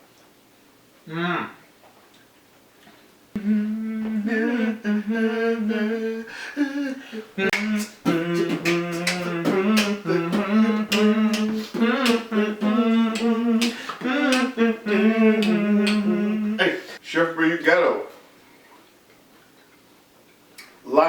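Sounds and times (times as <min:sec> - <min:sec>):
man humming: 0:03.4 - 0:17.0
rhythmic sharp clicks: 0:07.5 - 0:14.6, 0:15.4 - 0:16.1.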